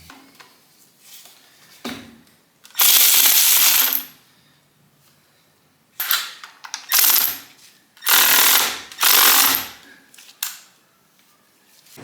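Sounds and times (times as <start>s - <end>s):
impact wrench bursts: 2.8s - 4.1s, 6.9s - 9.8s.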